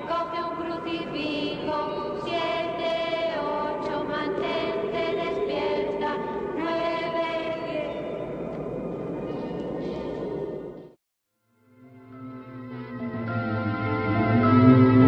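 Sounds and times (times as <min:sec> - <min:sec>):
choir chanting sustained notes: 0:00.0 - 0:10.8, 0:11.8 - 0:15.0.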